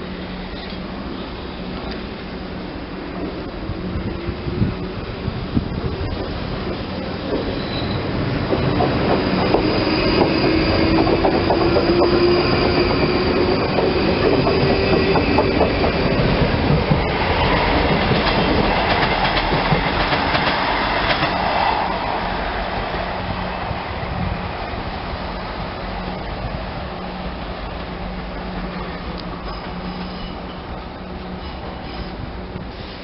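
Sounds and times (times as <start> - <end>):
diesel locomotive engine: 0.0 - 33.0
wheel squeal: 7.3 - 15.6, 29.4 - 30.7.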